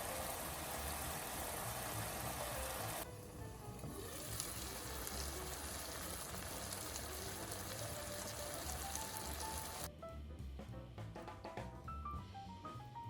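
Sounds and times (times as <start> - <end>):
tofu sizzling in a pan: 0.0 - 9.9
soft background music: 0.0 - 13.0.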